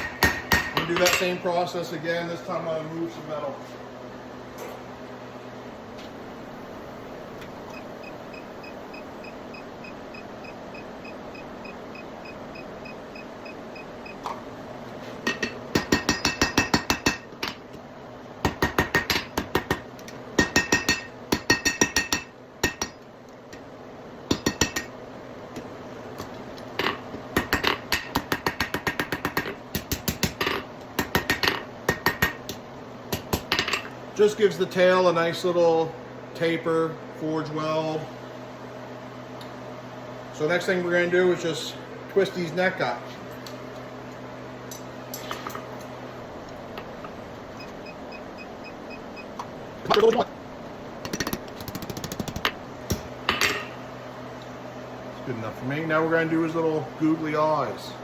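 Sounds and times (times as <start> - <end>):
hammer striking hot steel on anvil: 0.0 - 1.4, 15.3 - 17.3, 20.4 - 23.0, 24.3 - 24.9, 27.4 - 33.7.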